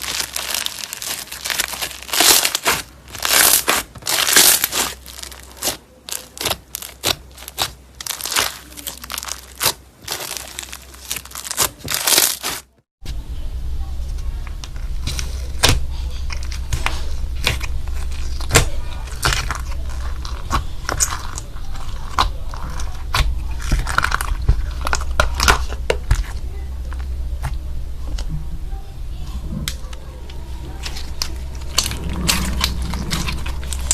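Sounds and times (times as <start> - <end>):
slime crackling when squeezed: 0.0 - 12.7
steady low hum: 0.0 - 33.9.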